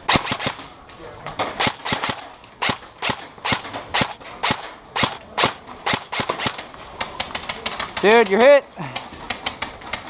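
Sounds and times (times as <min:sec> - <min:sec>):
airsoft guns firing: 0:00.0 - 0:00.8, 0:01.4 - 0:08.5.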